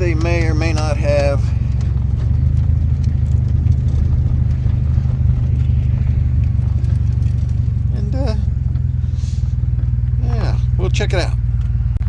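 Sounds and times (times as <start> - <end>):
small clicks and rattles: 0.0 - 7.9
wind and road rumble: 0.0 - 12.0.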